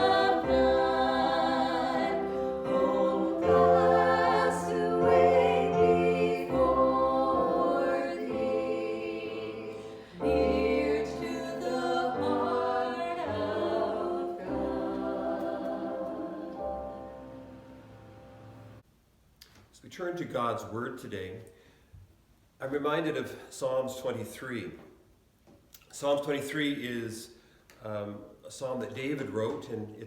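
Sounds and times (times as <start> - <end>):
choir singing sustained chords: 0.0 - 18.8.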